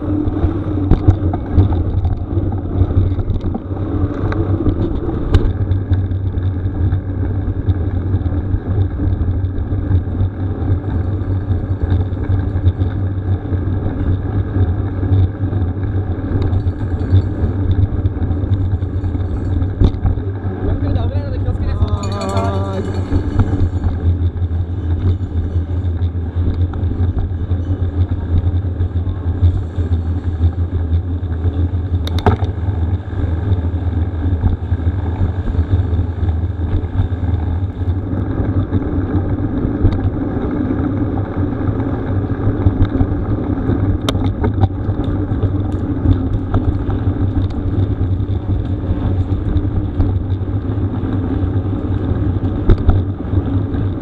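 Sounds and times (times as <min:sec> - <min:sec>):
bike tyres rolling on gravel: 0:00.0 - 0:54.0
stones and bike rattling: 0:00.0 - 0:54.0
wind buffeting microphone: 0:00.0 - 0:54.0.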